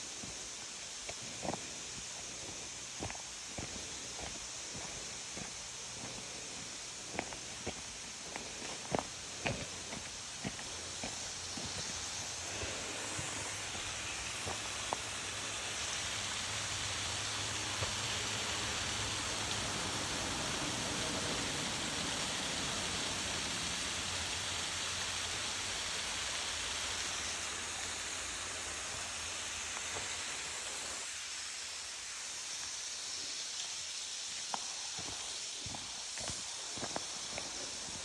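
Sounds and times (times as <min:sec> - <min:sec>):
waterfall rushing: 0:10.9 - 0:32.6.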